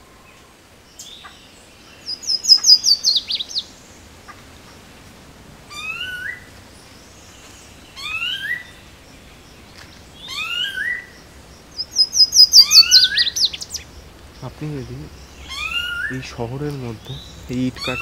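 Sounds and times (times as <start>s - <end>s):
bird whistling rising phrase: 11.8s - 13.8s, 14.9s - 16.4s.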